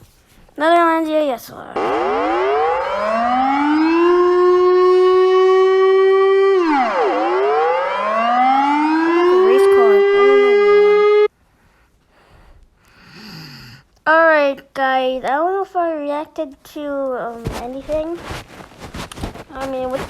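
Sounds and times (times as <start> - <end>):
civil defence warning siren: 1.8 - 11.3.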